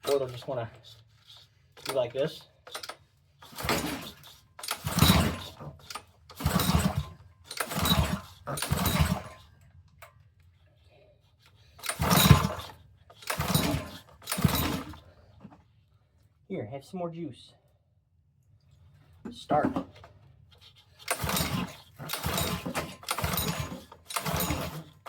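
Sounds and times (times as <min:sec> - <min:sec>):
engine recoil cord pulls: 0:01.2 - 0:09.6, 0:11.6 - 0:15.6, 0:19.7 - 0:25.0.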